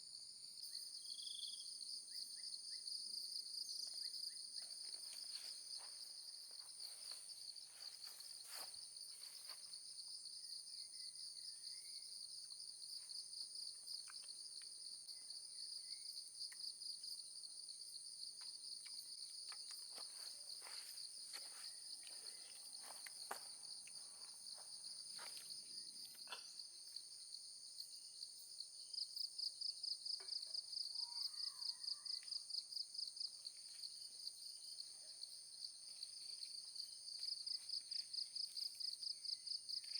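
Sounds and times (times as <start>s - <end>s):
insects chirping in a pulsing trill: 0.2s - 30.2s.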